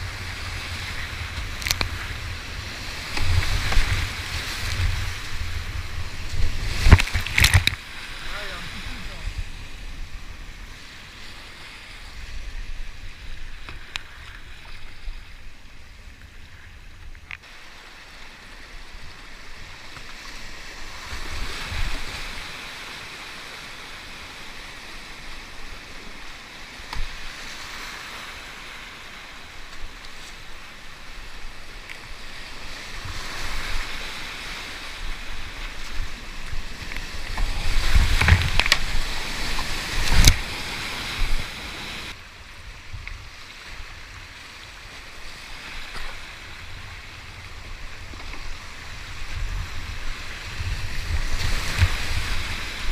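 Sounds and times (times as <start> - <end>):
wind buffeting microphone: 0.0 - 11.2, 32.2 - 44.3, 45.8 - 52.9
paddle splashes: 0.0 - 52.9
whitewater rushing: 3.0 - 9.7.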